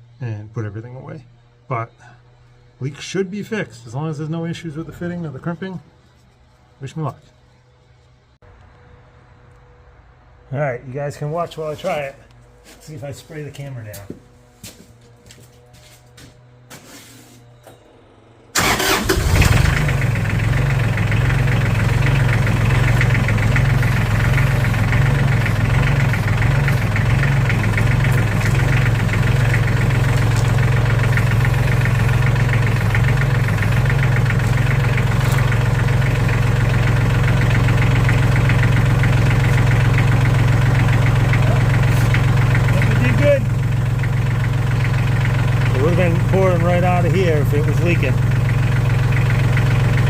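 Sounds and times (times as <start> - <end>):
tractor engine starting and idling: 17.6 - 50.0.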